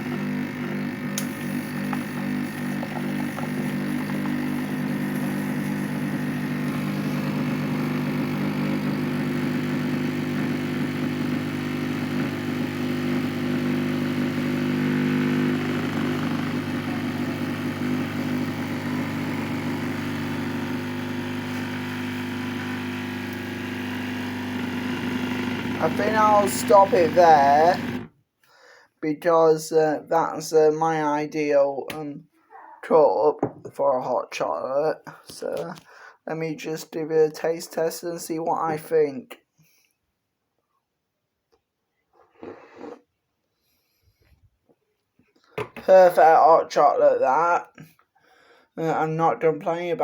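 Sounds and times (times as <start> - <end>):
capsule machine pump buzzing: 0.0 - 28.1.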